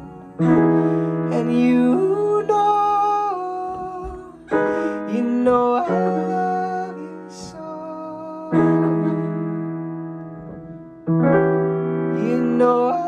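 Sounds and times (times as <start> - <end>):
man singing held notes: 1.3 - 9.4.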